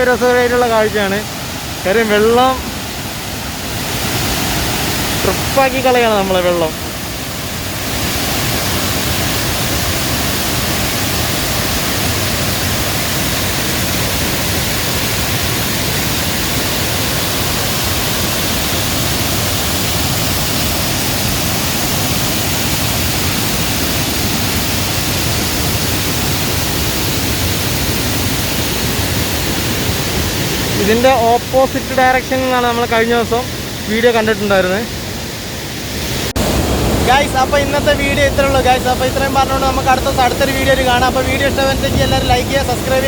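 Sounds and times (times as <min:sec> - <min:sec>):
water rushing from dam: 0:00.0 - 0:43.0.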